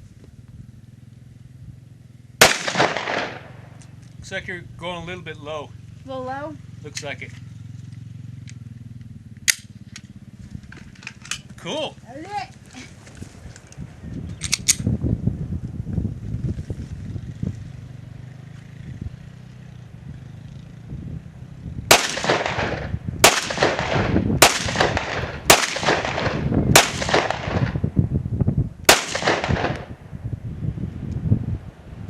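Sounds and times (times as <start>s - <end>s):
wind rumble on microphone: 0.0s - 32.0s
rifle gunshots with echo: 2.4s - 3.8s, 21.9s - 27.8s, 28.9s - 30.0s.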